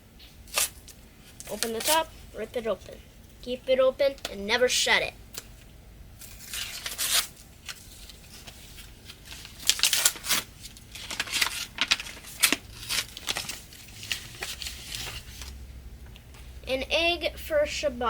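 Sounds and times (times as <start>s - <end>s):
packaging tearing and crinkling: 0.5s - 2.0s, 6.2s - 15.6s.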